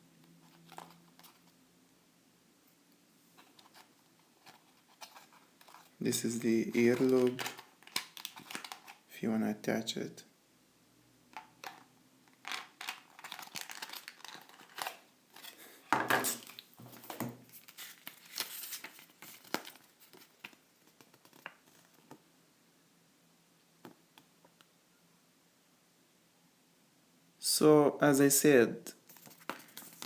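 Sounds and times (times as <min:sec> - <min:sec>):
plastic packaging crinkling: 0:06.6 - 0:09.0, 0:12.4 - 0:20.6, 0:29.1 - 0:30.0.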